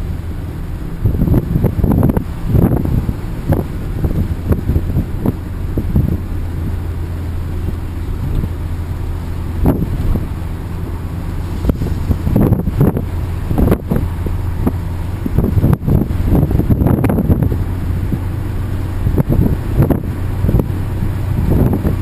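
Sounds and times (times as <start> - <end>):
tyre and wind noise: 0.0 - 22.0
van engine and road drone: 0.0 - 22.0.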